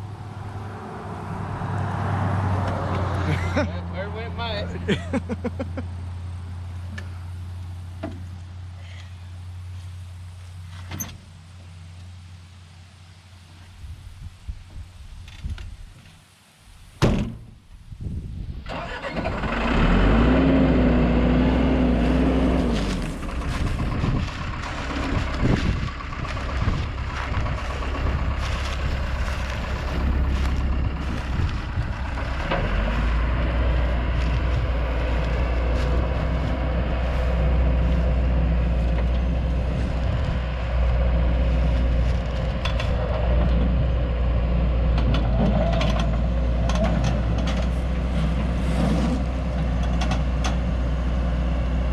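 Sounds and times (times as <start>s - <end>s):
engine running: 0.0s - 13.7s, 18.5s - 51.9s
engine whine: 0.0s - 13.7s, 18.5s - 51.9s.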